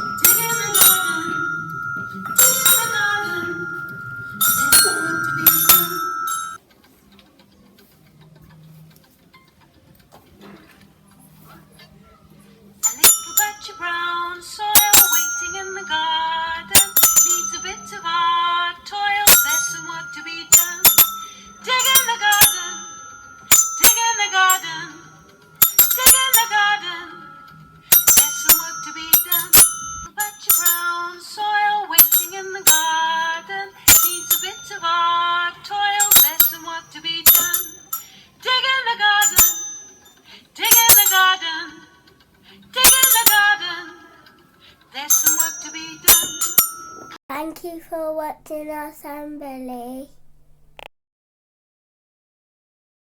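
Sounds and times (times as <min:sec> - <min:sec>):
bright bell-like strikes: 0:00.0 - 0:06.6, 0:12.8 - 0:18.3, 0:19.2 - 0:31.2, 0:32.0 - 0:35.1, 0:35.9 - 0:38.2, 0:39.2 - 0:40.1, 0:40.7 - 0:41.5, 0:42.8 - 0:43.7, 0:45.1 - 0:47.2.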